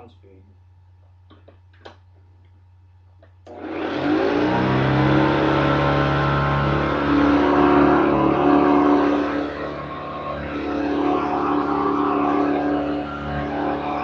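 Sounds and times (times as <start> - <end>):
vacuum cleaner running: 3.5 - 14.0.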